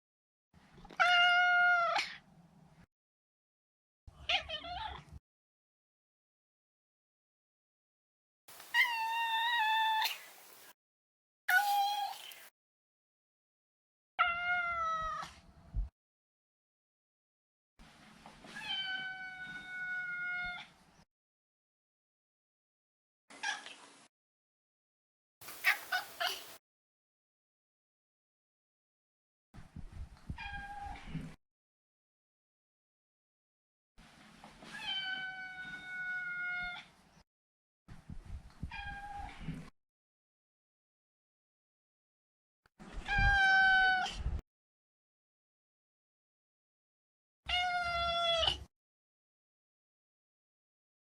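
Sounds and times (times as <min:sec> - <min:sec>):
cat meowing: 0:08.7 - 0:10.3, 0:18.6 - 0:20.7, 0:47.5 - 0:48.6.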